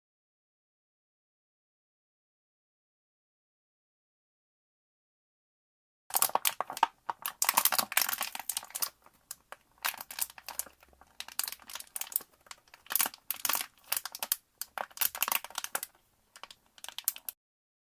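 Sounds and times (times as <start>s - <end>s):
plastic bottle being crushed: 6.1s - 17.4s.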